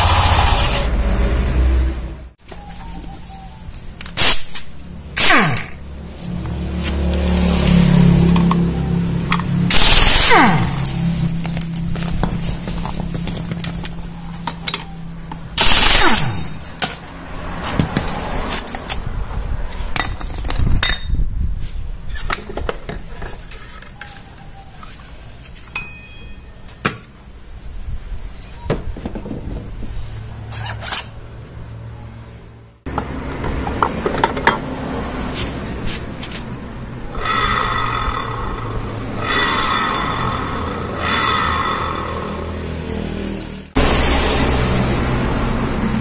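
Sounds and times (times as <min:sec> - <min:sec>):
metal tools clinking: 0:10.5 - 0:17.8, 0:18.5 - 0:19.1, 0:19.8 - 0:21.1, 0:23.2 - 0:26.8, 0:30.5 - 0:31.2.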